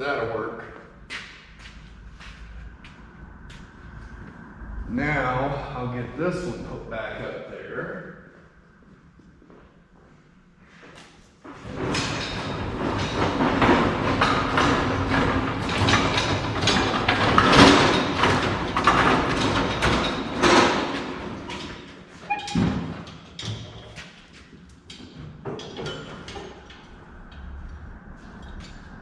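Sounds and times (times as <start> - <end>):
heavy object clattering and scraping: 11.5 - 29.0.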